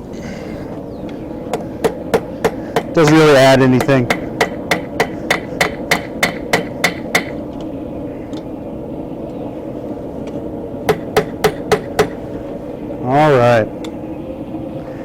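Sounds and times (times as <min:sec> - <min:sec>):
steady low hum: 0:00.0 - 0:15.0
hammer striking steel on anvil: 0:03.8 - 0:07.4, 0:10.9 - 0:12.2.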